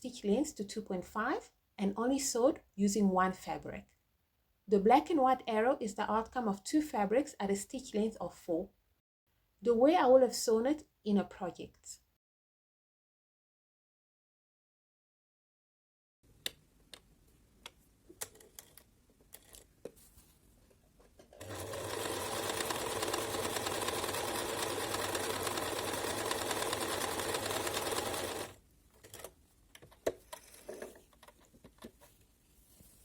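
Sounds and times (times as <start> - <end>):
sewing machine stitching: 21.4 - 29.2.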